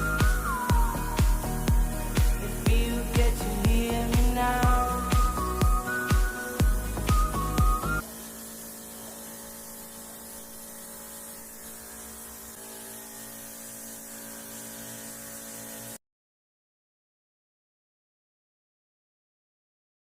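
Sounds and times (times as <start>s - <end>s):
background music: 0.0s - 8.0s.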